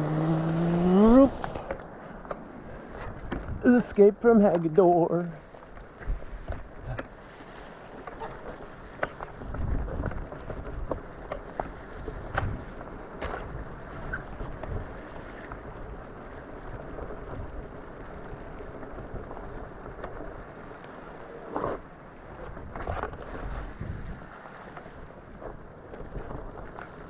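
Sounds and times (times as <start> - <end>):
bike tyre noise: 0.0 - 27.0
bike clicking and knocking on rocks: 1.4 - 24.0.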